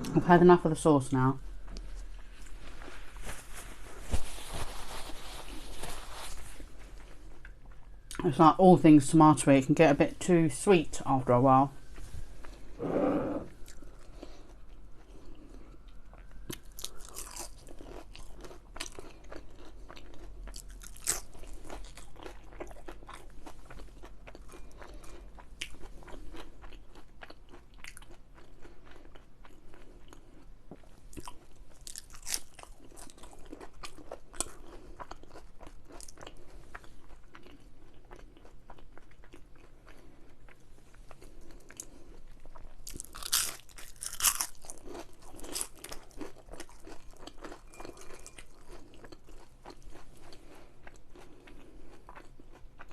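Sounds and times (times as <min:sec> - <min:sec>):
crunchy chewing: 0:11.9 - 0:52.9.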